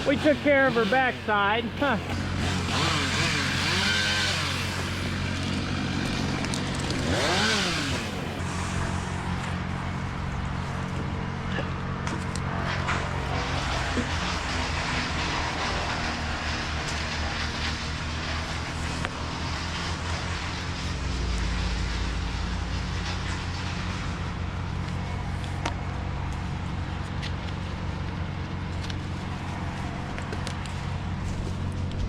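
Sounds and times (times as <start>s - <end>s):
engine idling: 0.0s - 32.0s.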